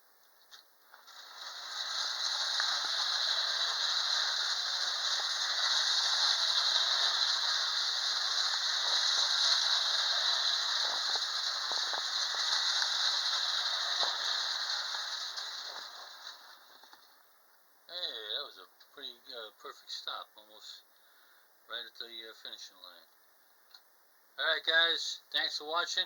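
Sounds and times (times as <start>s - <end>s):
toy train whirring on metal rails: 0.9s - 16.9s.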